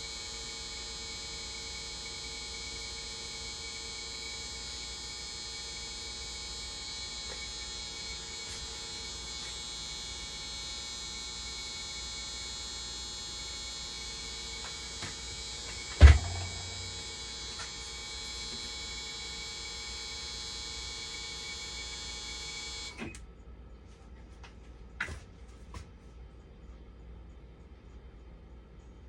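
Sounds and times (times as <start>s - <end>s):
machine electronic whine and hum: 0.0s - 23.5s
loud knock: 15.9s - 17.0s.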